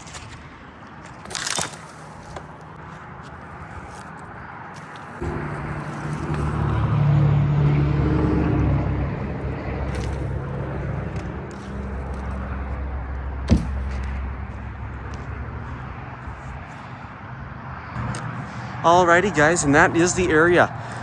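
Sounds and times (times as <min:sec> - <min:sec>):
vehicle engine running: 0:04.8 - 0:17.6
sharp knock: 0:13.5 - 0:14.2.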